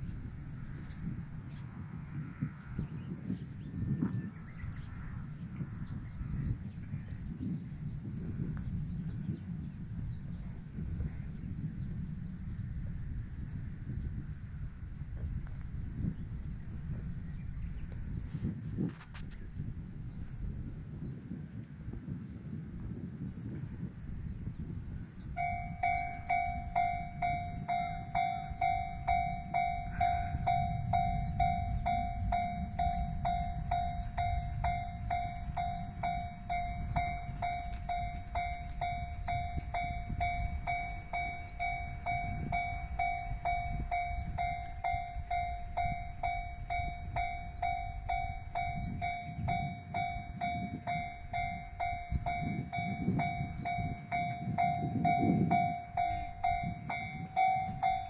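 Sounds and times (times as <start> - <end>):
level-crossing alarm ringing: 25.4 - 58.0.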